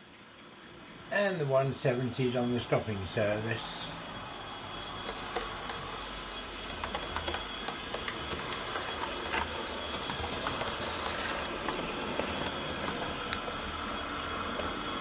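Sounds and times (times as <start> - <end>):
model train rumbling: 1.4 - 15.0
wheels clicking over rail joints: 4.9 - 13.5.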